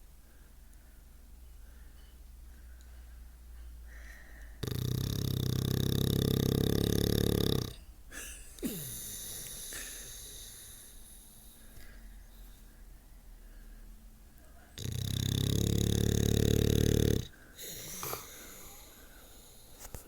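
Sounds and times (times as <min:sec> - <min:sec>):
quiet hiss: 0:00.0 - 0:20.0
dog snoring: 0:04.6 - 0:07.8, 0:14.8 - 0:18.9.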